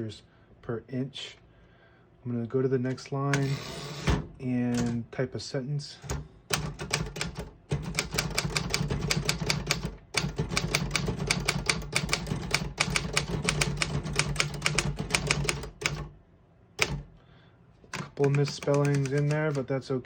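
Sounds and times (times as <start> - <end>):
manual typewriter keys clacking: 6.0 - 16.1, 17.9 - 19.7.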